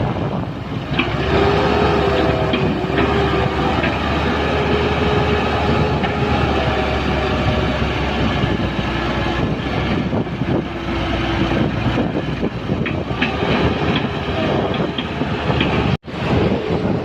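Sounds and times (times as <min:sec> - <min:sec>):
diesel engine drone: 0:00.0 - 0:17.0
metallic clanks and squeaks: 0:11.6 - 0:16.0.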